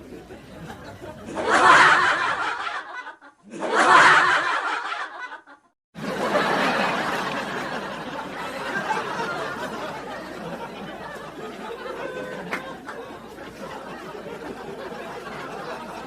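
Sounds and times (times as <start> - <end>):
laughter sound effect: 0.1 - 13.0.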